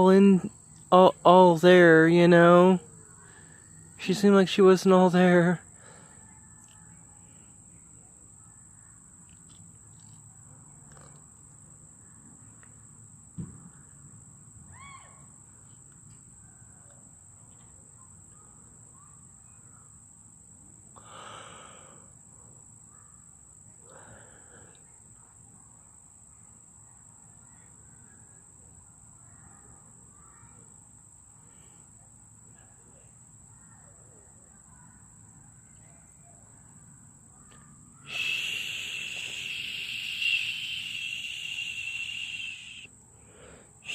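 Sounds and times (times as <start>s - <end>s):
steady high-pitched whine: 34.5s - 43.0s
rising bird chirp: 38.0s - 42.9s.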